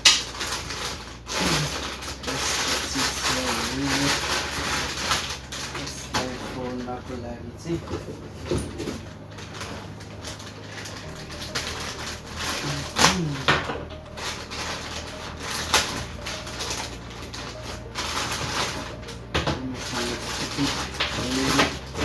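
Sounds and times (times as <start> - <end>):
plastic packaging crinkling: 0.0 - 22.0.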